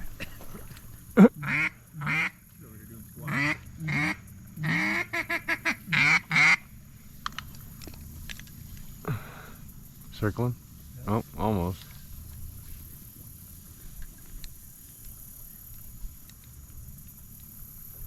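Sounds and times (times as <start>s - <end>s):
duck call quacks: 1.2s - 2.4s, 3.2s - 6.7s.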